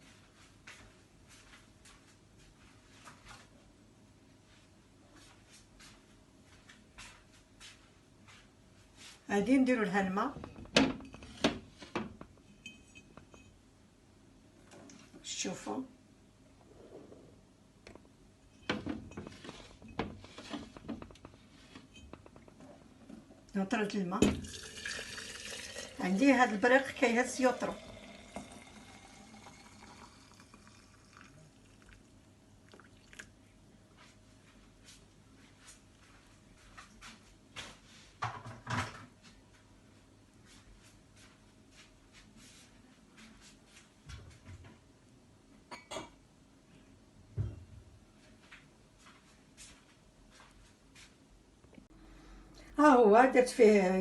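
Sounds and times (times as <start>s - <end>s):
sharp clink of kitchenware: 45.7s - 46.2s.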